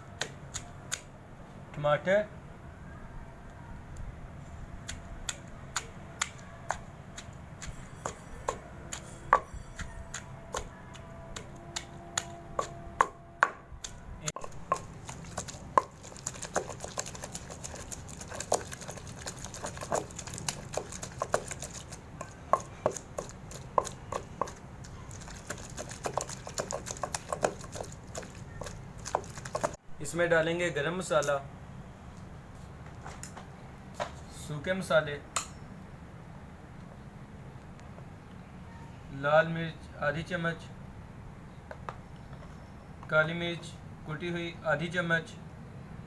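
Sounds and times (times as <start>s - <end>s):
pestle pounding in a mortar: 5.3s - 29.8s.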